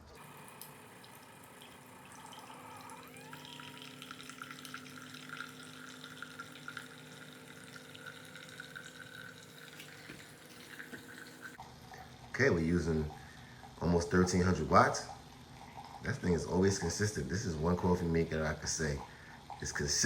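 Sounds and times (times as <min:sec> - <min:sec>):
hot water hissing and dripping: 0:00.0 - 0:11.6
coffee maker humming: 0:00.0 - 0:20.0.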